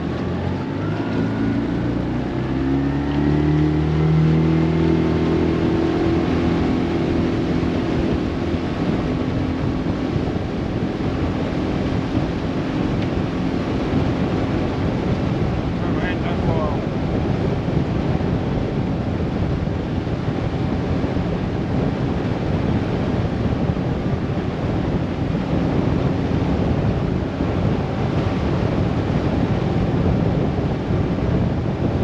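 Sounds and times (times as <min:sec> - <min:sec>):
outboard motor running: 0:00.0 - 0:32.0.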